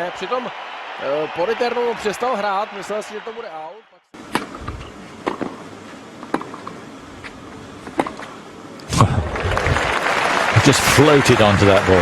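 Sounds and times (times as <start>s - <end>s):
crowd cheering and applauding: 0.0s - 3.8s, 8.9s - 12.0s.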